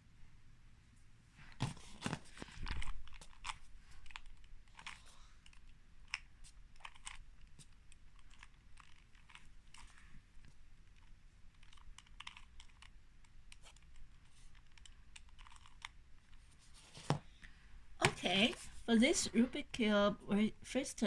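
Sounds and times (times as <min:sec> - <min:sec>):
puzzle cube plastic clicks: 0:01.6 - 0:17.1.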